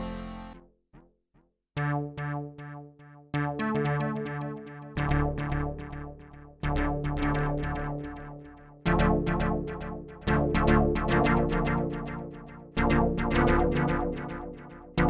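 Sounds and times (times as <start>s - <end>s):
synthesizer playing plucky notes: 0.0s - 0.6s.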